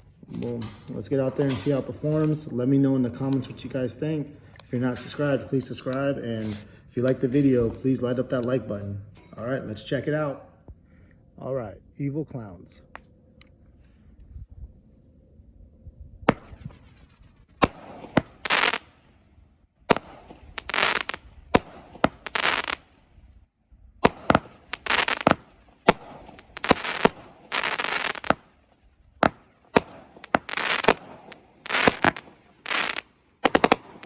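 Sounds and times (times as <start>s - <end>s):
firework crackling bursts: 16.3s - 19.0s, 19.9s - 23.0s, 24.0s - 28.5s, 29.2s - 34.0s
firework launch thumps: 17.6s - 18.9s, 19.9s - 22.8s, 24.0s - 28.5s, 29.2s - 34.0s.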